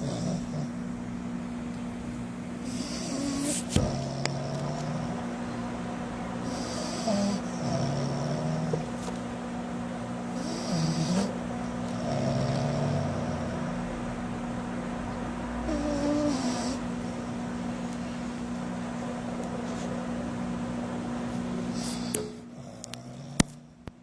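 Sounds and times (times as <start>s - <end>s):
pet snoring: 0.0s - 0.8s, 2.6s - 5.3s, 6.4s - 9.0s, 10.3s - 13.9s, 15.6s - 17.0s, 21.7s - 23.8s
steady low hum: 0.0s - 24.0s.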